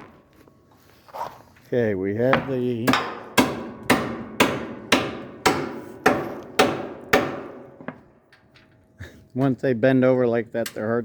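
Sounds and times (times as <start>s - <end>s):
hammer blows ringing: 2.3s - 7.9s.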